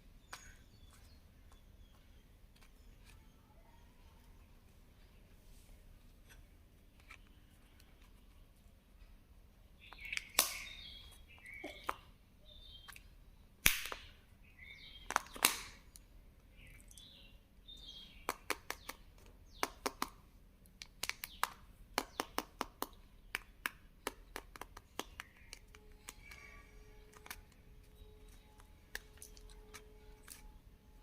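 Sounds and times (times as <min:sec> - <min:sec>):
loud plastic snaps and crinkles: 0:15.1 - 0:15.9.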